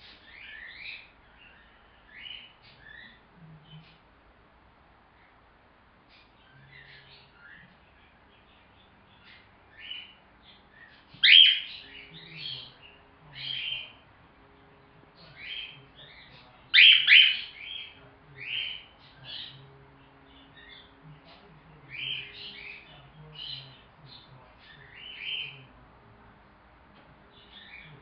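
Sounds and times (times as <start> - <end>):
cockatiel chirping: 10.8 - 12.7, 15.4 - 19.6.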